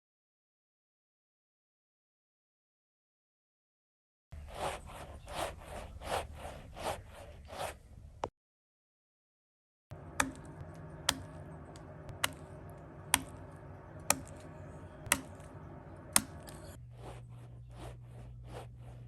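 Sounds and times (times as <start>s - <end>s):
soft crunching strokes: 4.4s - 8.2s, 9.9s - 19.0s
sharp clicks: 9.9s - 16.8s.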